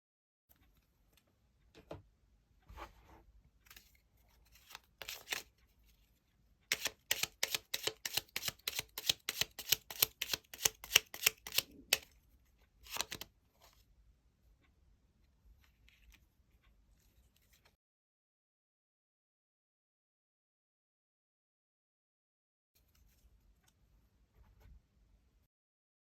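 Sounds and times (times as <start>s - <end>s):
cards rustling: 3.7s - 5.5s, 6.7s - 12.1s, 12.8s - 13.3s.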